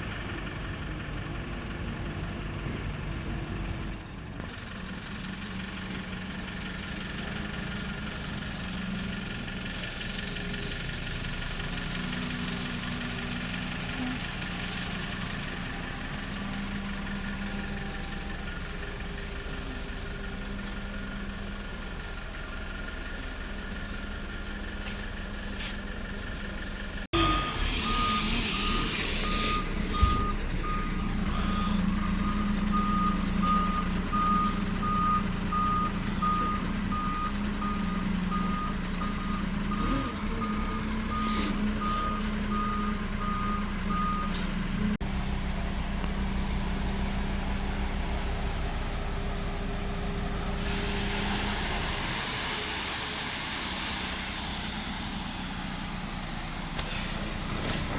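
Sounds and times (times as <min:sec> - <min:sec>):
heavy vehicle engine running: 0:00.0 - 0:57.9
truck reversing alarm beeps: 0:05.2 - 0:45.0, 0:46.1 - 0:52.3.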